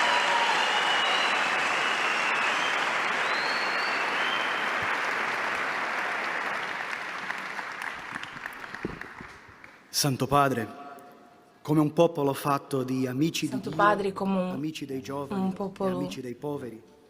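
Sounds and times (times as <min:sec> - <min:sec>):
whistles: 0:00.0 - 0:04.9
audience applauding: 0:00.0 - 0:09.9.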